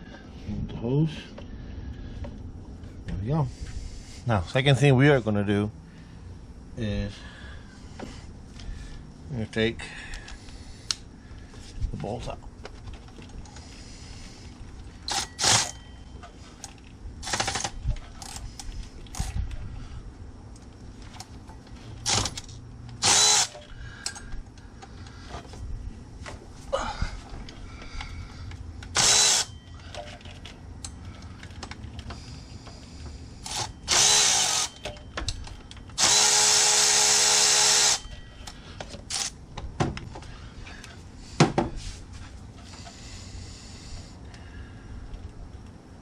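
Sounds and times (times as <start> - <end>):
power tool whirring: 15.1 - 15.8, 17.2 - 19.2, 22.0 - 23.7, 28.9 - 29.6, 33.4 - 35.0, 36.0 - 38.2, 39.1 - 39.4
knocks and clicks of tools: 33.4 - 36.4.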